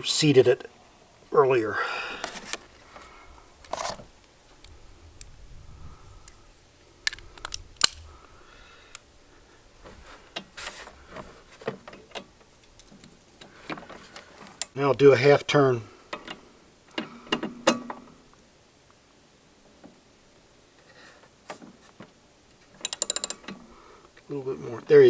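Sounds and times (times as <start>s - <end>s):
handling noise: 2.1s - 14.8s
metallic clicks and taps: 22.8s - 23.6s.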